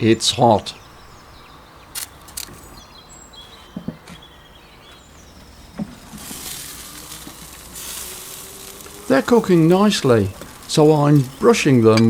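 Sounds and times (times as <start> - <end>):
small birds chirping: 0.0 - 12.0
light clicks: 1.9 - 2.7
food sizzling on a grill: 5.5 - 11.8.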